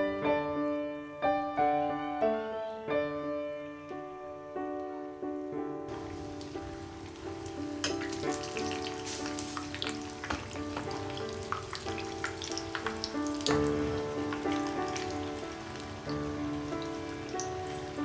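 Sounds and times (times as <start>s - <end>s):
soft background music: 0.0s - 18.0s
food sizzling and popping in oil: 5.9s - 18.0s.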